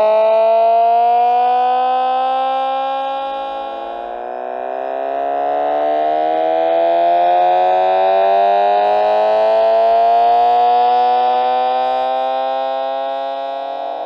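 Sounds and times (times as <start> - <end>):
synthetic engine drone rising: 3.4 - 14.0.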